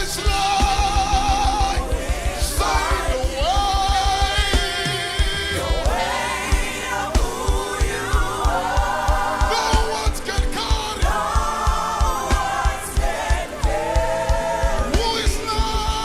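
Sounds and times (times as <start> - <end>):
backing singers: 0.0 - 16.0
band with steady drum beat: 0.0 - 16.0
lead voice singing: 0.0 - 16.0.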